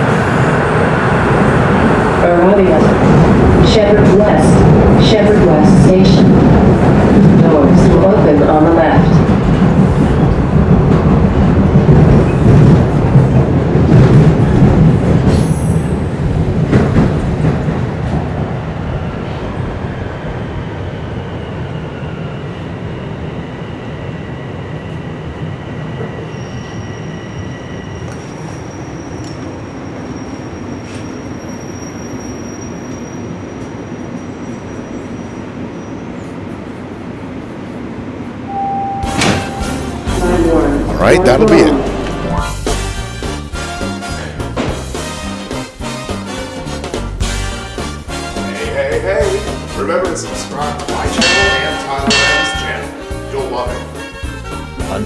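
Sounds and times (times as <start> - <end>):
subway train wheel rumble: 0.0 - 55.0
wheel and brake squeals: 26.2 - 36.6.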